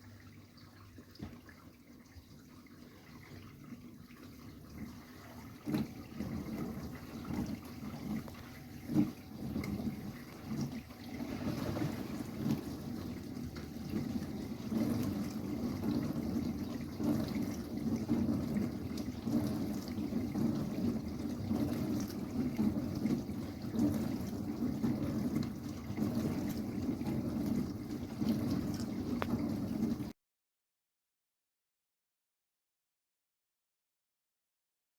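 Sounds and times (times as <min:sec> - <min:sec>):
dishwasher water sloshing: 0:00.0 - 0:30.1.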